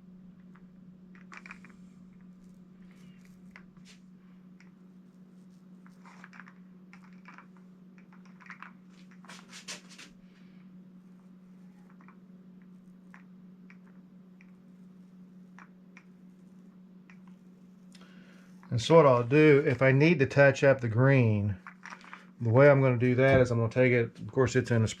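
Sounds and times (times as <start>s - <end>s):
steady low hum: 0.0s - 25.0s
paint roller sticky crackles: 1.2s - 10.2s.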